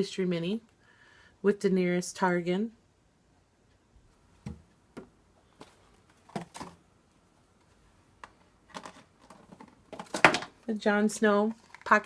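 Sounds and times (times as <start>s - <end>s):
toy boxes clicking and knocking: 8.7s - 10.6s.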